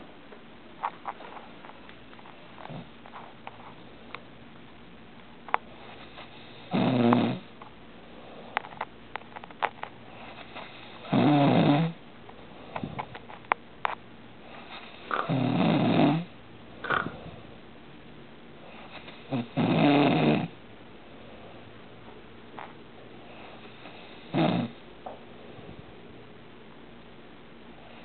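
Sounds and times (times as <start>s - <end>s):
man snoring: 6.4s - 7.4s, 10.6s - 12.0s, 14.8s - 16.3s, 19.0s - 20.6s, 24.0s - 24.8s.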